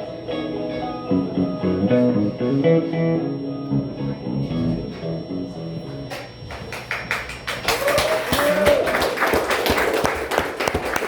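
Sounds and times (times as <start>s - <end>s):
audience clapping: 6.1s - 11.0s
person cheering: 7.7s - 9.2s.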